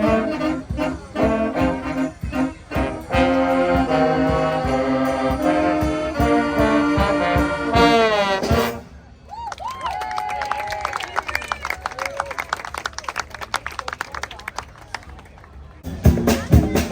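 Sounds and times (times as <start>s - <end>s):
faint voices: 0.0s - 8.0s, 10.6s - 16.9s
steady drum beat: 0.0s - 8.8s, 15.8s - 16.9s
brass band music: 0.0s - 9.1s, 15.8s - 16.9s.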